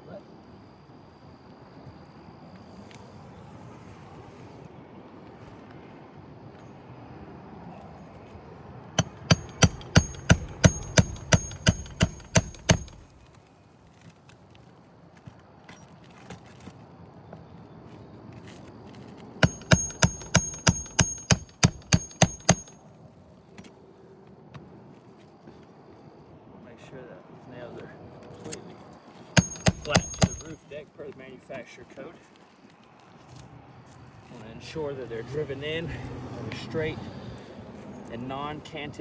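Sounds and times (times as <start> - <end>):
high metallic ring: 9.0 - 13.1, 19.4 - 22.8, 29.4 - 30.6
hammer driving nails: 9.0 - 13.3, 19.4 - 22.8, 29.4 - 30.6.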